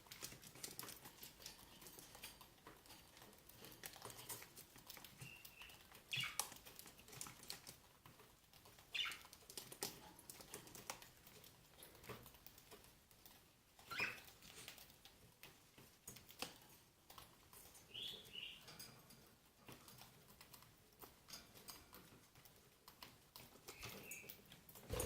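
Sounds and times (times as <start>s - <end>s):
beak tapping and nibbling: 0.0s - 25.0s
bird chirps: 5.2s - 6.4s, 13.9s - 14.3s, 17.9s - 18.6s, 23.7s - 24.4s.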